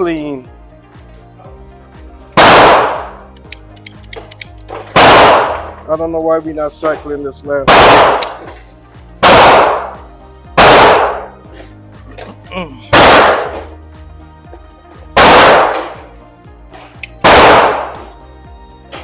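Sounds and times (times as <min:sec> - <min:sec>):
loud gunshots: 0:02.4 - 0:03.2, 0:04.9 - 0:05.8, 0:07.7 - 0:08.4, 0:09.2 - 0:10.0, 0:10.6 - 0:11.3, 0:12.9 - 0:13.7, 0:15.2 - 0:16.0, 0:17.2 - 0:18.1.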